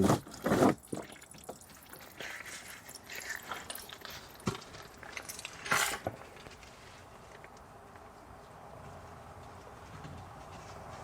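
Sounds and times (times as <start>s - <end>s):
faint trickle of oil: 0.2s - 5.7s.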